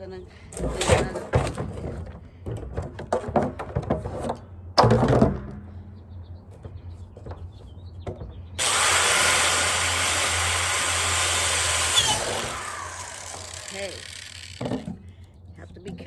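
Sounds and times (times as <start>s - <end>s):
electric drill boring into metal: 8.6s - 14.9s.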